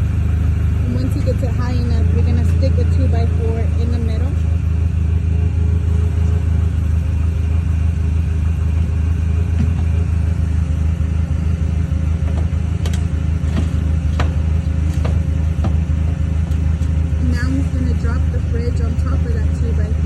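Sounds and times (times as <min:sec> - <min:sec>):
forklift engine humming: 0:00.0 - 0:20.0
short knocks: 0:12.2 - 0:16.6.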